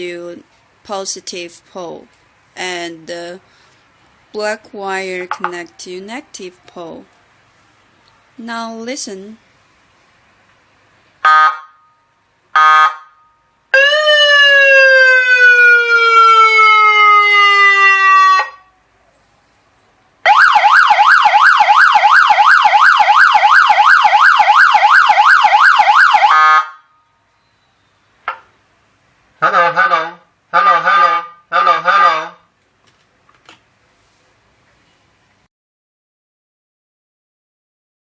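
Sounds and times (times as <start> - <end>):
fast warbling siren: 11.2 - 11.9, 12.6 - 18.7, 20.2 - 27.0, 29.4 - 32.4.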